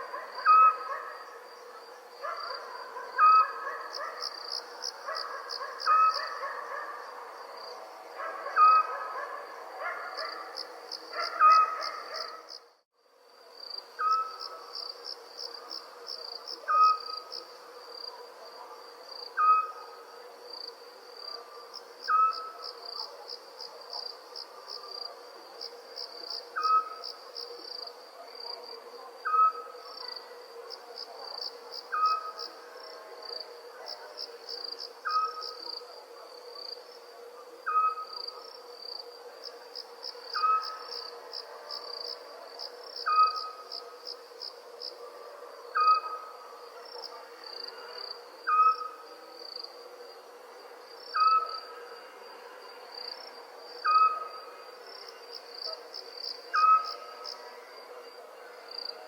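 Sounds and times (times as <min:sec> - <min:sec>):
crickets chirping: 0:00.0 - 0:59.0
owl call: 0:40.4 - 0:40.9, 0:47.7 - 0:49.0.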